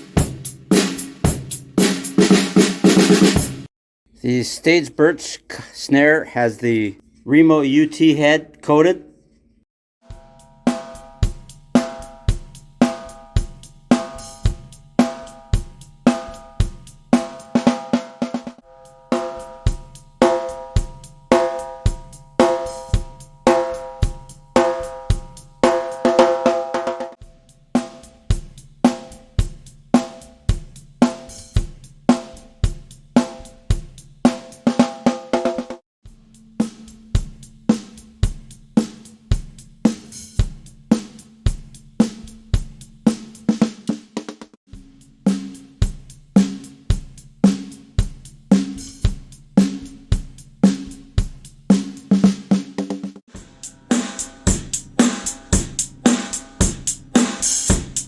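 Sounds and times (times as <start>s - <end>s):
drum kit playing a steady beat: 0.0s - 3.7s, 10.1s - 58.0s
snare drum backbeat ringing: 10.1s - 27.2s.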